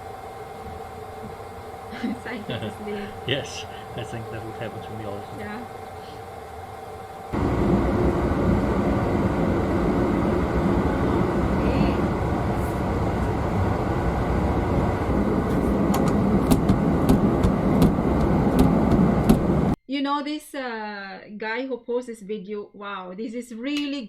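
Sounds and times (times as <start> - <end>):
train rumbling on rails: 0.0 - 19.8.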